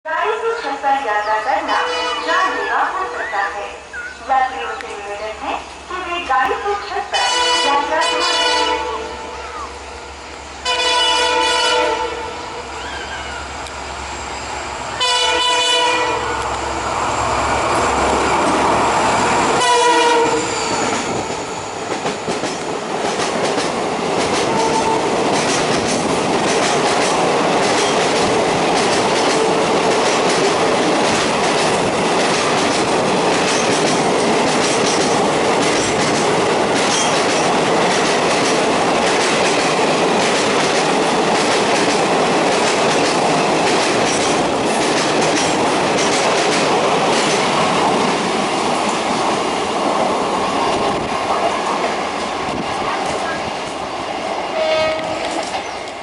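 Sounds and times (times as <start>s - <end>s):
train rushing past: 0.2s - 56.0s
locomotive horn blasts: 1.7s - 2.5s, 7.2s - 9.4s, 10.6s - 12.5s, 14.9s - 16.6s, 19.6s - 20.6s, 24.5s - 25.1s, 54.6s - 55.4s.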